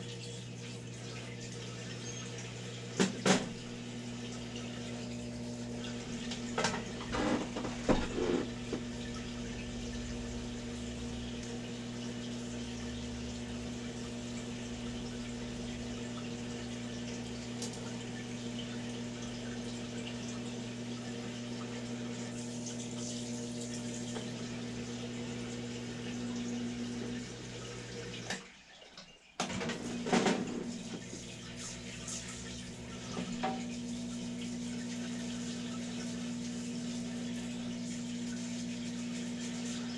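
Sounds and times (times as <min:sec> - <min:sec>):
liquid running from nozzle: 0:00.0 - 0:09.3, 0:30.8 - 0:39.9
pump hum: 0:00.0 - 0:28.5, 0:29.4 - 0:39.9.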